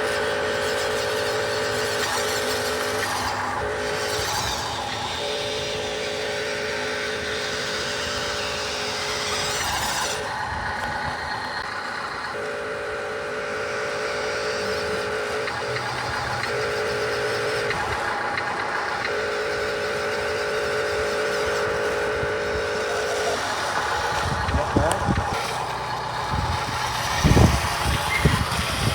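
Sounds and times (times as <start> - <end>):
radio-controlled truck whine: 0.0 - 28.9.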